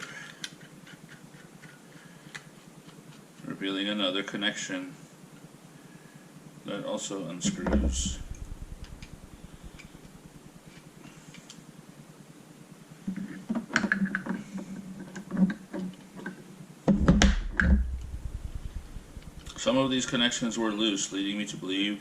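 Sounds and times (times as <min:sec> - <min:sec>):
low handling knock: 0:16.9 - 0:19.6.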